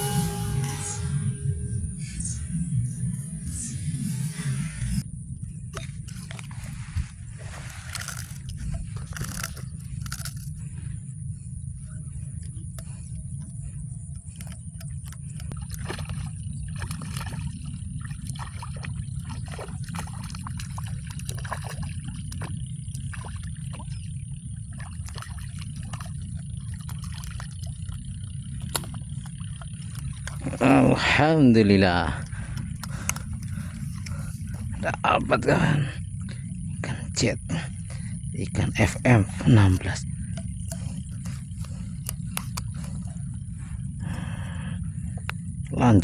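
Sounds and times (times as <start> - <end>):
water sloshing and splashing: 0.0 - 35.9, 37.9 - 45.3
steady low rumble: 0.0 - 46.0
scrapes and clicks: 5.7 - 10.8, 14.1 - 18.5, 24.8 - 31.1, 32.3 - 34.8, 38.6 - 43.3.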